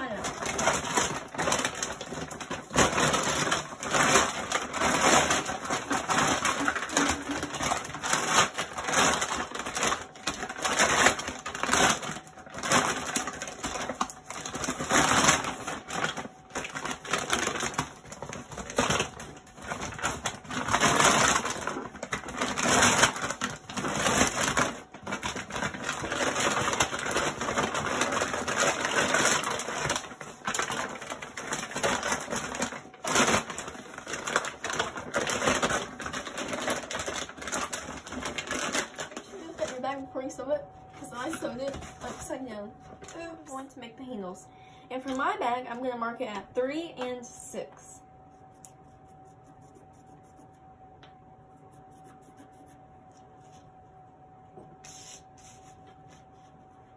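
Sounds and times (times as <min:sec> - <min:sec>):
plastic sack crinkling: 0:00.0 - 0:40.4, 0:41.0 - 0:43.6.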